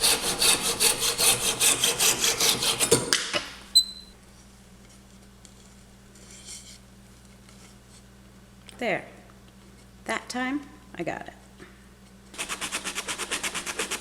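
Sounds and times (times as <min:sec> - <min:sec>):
hand saw cutting wood: 0:00.0 - 0:03.3, 0:12.4 - 0:14.0.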